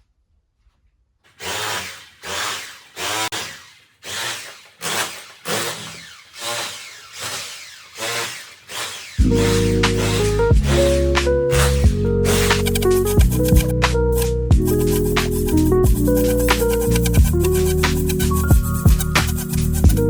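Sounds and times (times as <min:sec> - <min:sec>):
tool scraping harsh strokes: 0:01.3 - 0:20.0
background music: 0:09.2 - 0:20.0.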